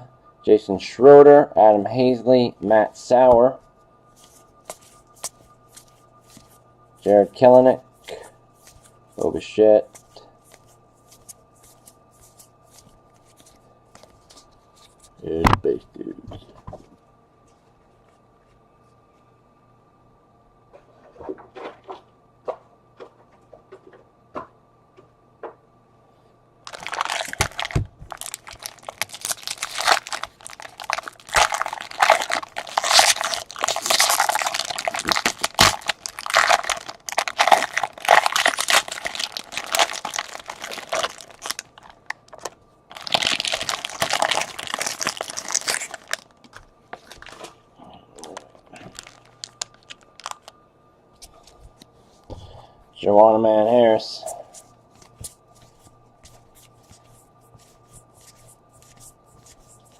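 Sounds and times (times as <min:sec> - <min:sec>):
foil wrappers crinkling: 0:26.7 - 0:47.6, 0:48.2 - 0:50.6.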